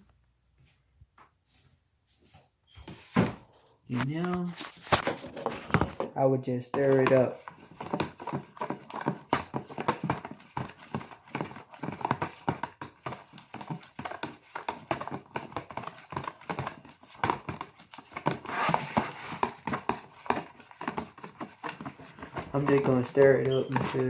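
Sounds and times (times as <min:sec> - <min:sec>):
utensil stirring slime in bowl: 0:06.8 - 0:24.0.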